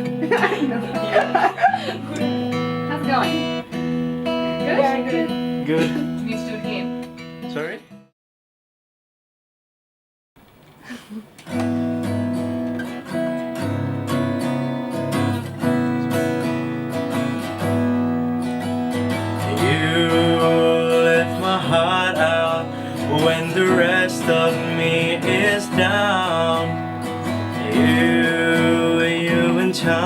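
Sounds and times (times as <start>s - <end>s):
acoustic guitar strumming chords: 0.0s - 8.0s, 11.4s - 30.0s
person singing without words: 19.4s - 30.0s.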